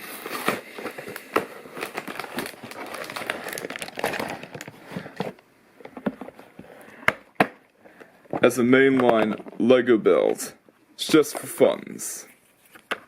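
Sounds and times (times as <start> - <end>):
packaging crinkling and rustling: 0.0 - 6.6.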